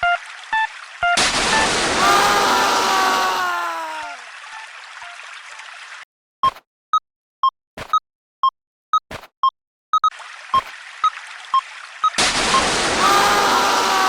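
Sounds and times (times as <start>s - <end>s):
creek water rushing: 0.2s - 5.9s, 10.1s - 14.0s.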